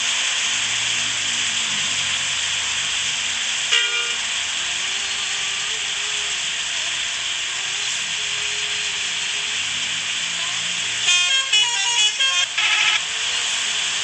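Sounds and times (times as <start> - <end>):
steady loud hiss: 0.0 - 14.0
multi-tone bus horn: 3.7 - 4.3, 11.0 - 13.1.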